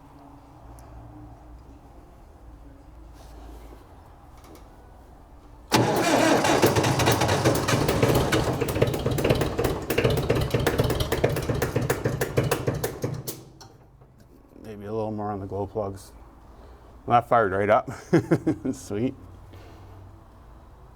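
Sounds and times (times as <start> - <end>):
diesel engine cranking: 5.7 - 14.6.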